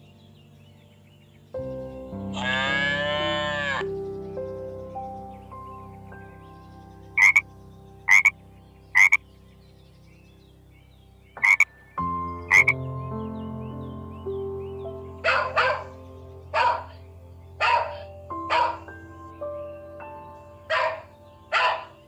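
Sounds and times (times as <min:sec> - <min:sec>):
frog double croaks: 0:07.2 - 0:07.4, 0:08.1 - 0:09.2, 0:11.4 - 0:11.7, 0:12.5 - 0:12.8.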